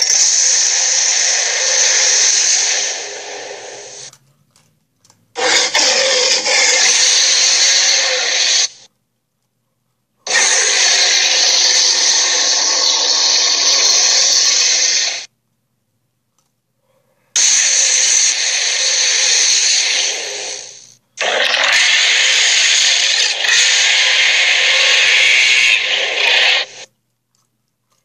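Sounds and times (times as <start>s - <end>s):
rasping dinosaur roars: 5.4s - 8.8s, 10.3s - 15.2s, 17.4s - 26.8s.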